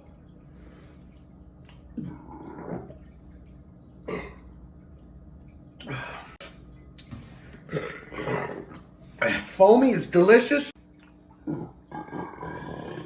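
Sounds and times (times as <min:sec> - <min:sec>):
man burping: 0:04.0 - 0:04.5, 0:07.7 - 0:09.5.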